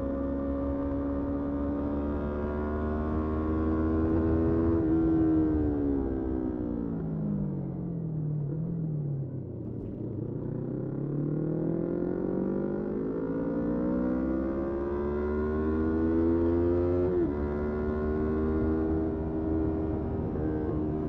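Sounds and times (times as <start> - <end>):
motorcycle engine accelerating: 9.7 - 21.0
wind and road noise: 15.0 - 21.0.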